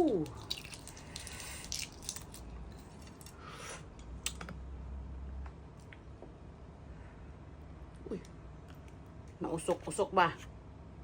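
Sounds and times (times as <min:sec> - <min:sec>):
soft chewing: 0:00.0 - 0:03.4.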